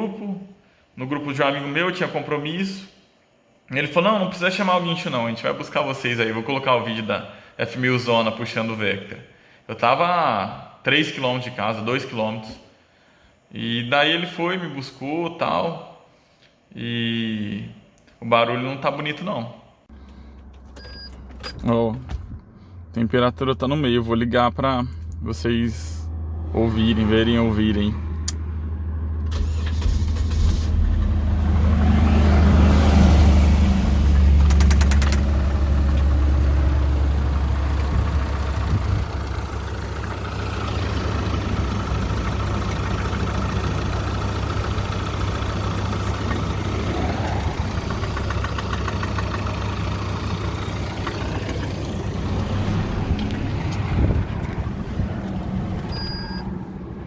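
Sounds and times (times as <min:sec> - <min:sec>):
abnormal engine noise: 0:19.9 - 0:57.0
car engine starting and idling: 0:19.9 - 0:57.0.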